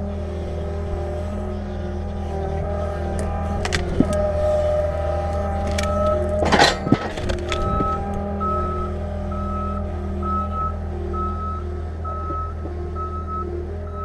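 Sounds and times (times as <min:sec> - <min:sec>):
skid steer engine running: 0:00.0 - 0:14.0
backup alarm beeping: 0:05.3 - 0:14.0.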